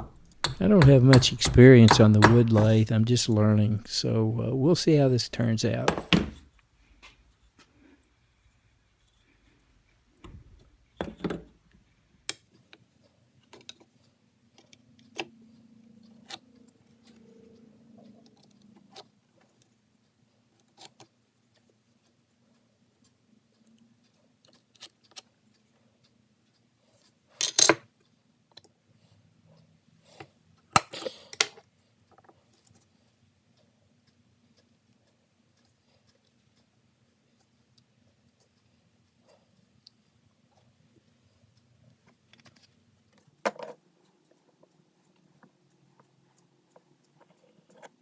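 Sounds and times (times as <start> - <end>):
wooden workpiece clattering: 0.0 - 2.8, 5.9 - 6.4
tools clicking and tapping: 0.0 - 2.9, 5.7 - 6.4, 27.4 - 28.8, 30.2 - 32.8, 42.0 - 48.0.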